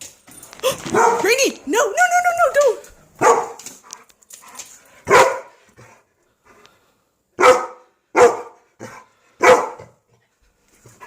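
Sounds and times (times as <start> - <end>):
dog barking: 0.9 - 1.3, 3.2 - 3.6, 5.1 - 5.6, 7.4 - 10.0.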